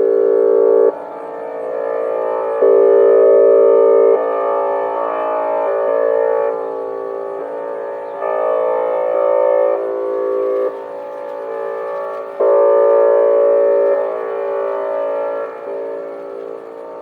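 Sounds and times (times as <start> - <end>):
warning sirens sounding steady tone: 0.0 - 17.0.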